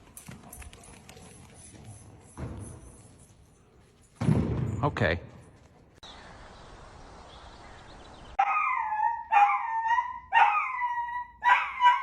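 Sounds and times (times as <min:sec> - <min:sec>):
dog yelping and whining: 0:08.4 - 0:12.0.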